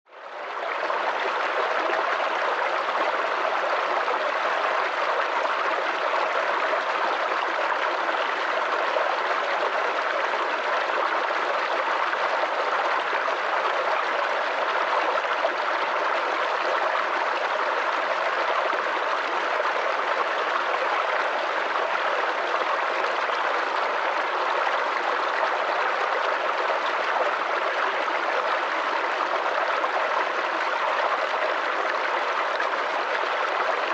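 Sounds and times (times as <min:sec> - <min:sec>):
stream water flowing and splashing: 0:00.1 - 0:33.9.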